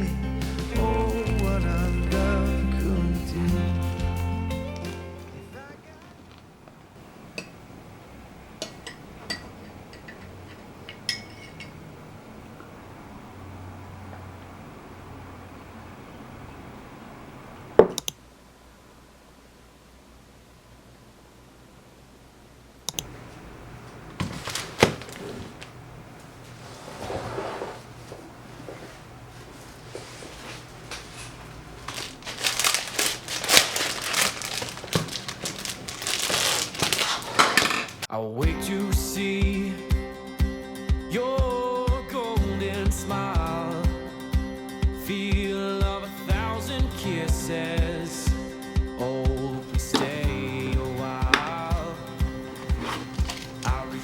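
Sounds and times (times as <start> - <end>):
faint room noise: 0.0 - 38.4
crinkling and rustling: 0.5 - 2.5, 4.5 - 7.0, 23.0 - 38.1, 50.0 - 54.0
small hard objects clinking: 31.8 - 38.1, 52.5 - 54.0.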